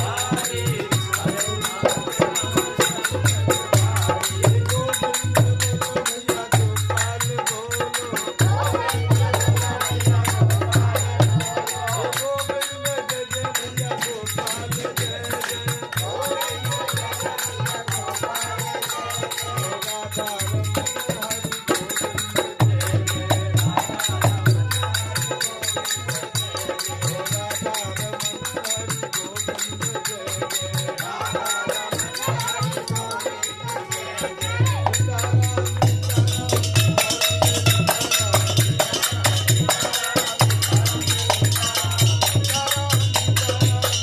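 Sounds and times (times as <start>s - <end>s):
jingling rattling percussion: 0.0s - 44.0s.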